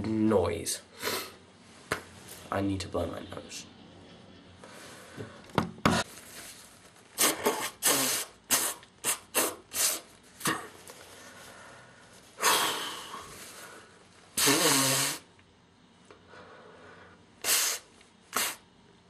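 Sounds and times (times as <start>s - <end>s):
person blowing nose: 1.0s - 1.4s, 7.1s - 10.7s, 12.4s - 13.6s, 14.4s - 15.3s, 17.4s - 18.7s.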